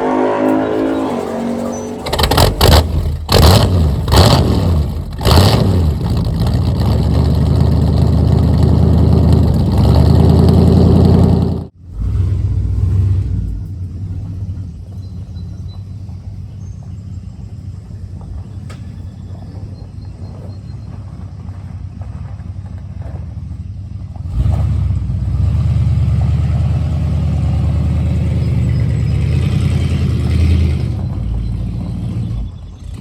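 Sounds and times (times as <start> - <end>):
loud throttle bursts: 0.0 - 13.6, 24.3 - 31.1
truck engine running: 0.0 - 33.0.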